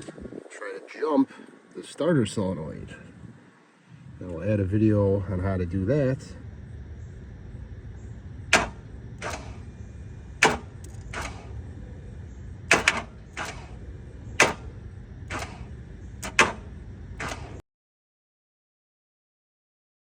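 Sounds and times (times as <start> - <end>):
starter solenoid clicking: 8.5 - 17.6.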